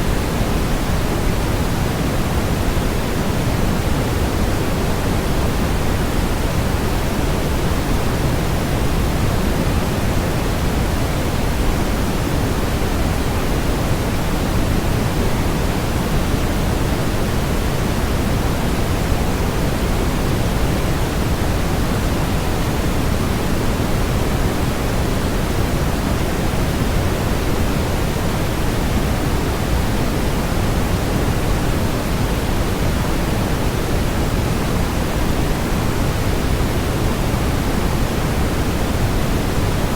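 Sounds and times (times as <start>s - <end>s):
steady white noise hiss: 0.0s - 39.9s.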